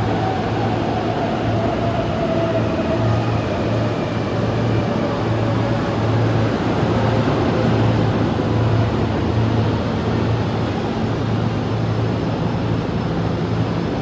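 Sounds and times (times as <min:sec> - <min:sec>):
electric train hum: 0:00.0 - 0:14.0.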